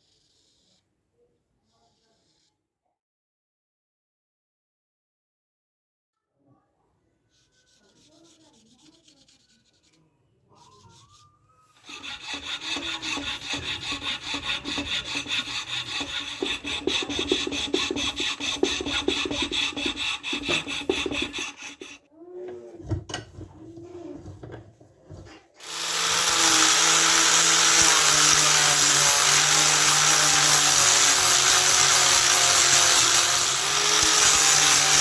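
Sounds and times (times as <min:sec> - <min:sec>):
tool rasping rapidly: 0:07.4 - 0:10.0, 0:11.8 - 0:22.0, 0:25.6 - 0:35.0.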